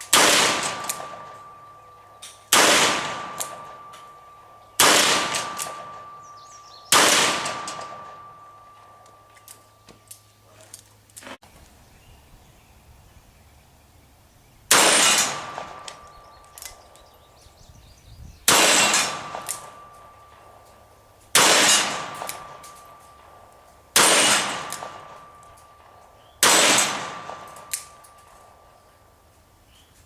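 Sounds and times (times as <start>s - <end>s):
rifle shots echoing: 0.0s - 9.3s, 14.7s - 16.8s, 18.5s - 28.7s
faint steady ringing tone: 0.8s - 2.5s, 3.2s - 4.8s, 5.4s - 9.9s, 19.1s - 21.3s, 22.0s - 24.0s, 24.9s - 26.3s.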